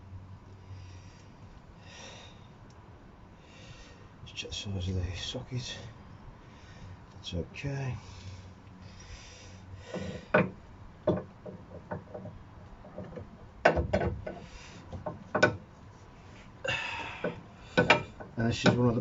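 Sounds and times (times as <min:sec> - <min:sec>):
metal tools knocking and clinking: 0:17.8 - 0:18.8.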